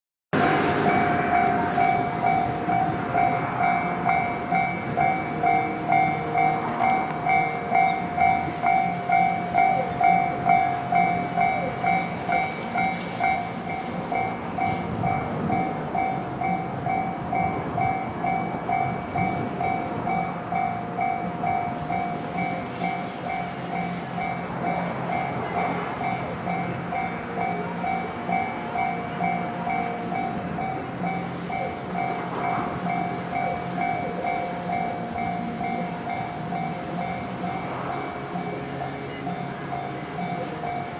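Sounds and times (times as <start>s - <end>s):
train running on rails: 0.3s - 40.9s
level crossing warning bell: 0.4s - 40.9s.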